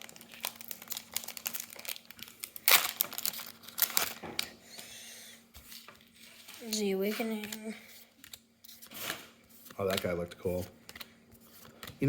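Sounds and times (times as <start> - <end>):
wrapper crinkling and tearing: 0.0 - 4.5.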